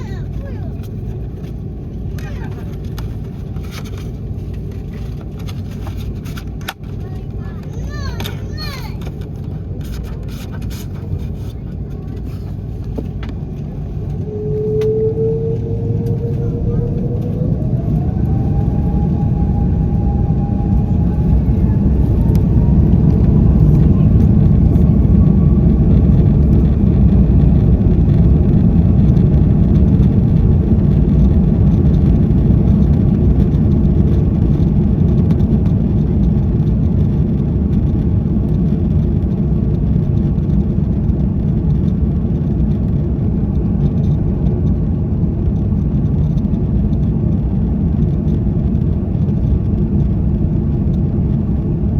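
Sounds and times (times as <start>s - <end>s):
jet engines rumbling in cabin: 0.0s - 51.9s
engine whine rising in pitch: 12.5s - 51.9s.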